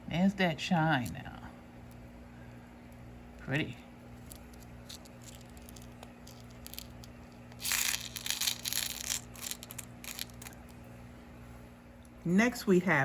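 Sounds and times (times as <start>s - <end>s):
plastic packaging crinkling: 4.1s - 10.7s.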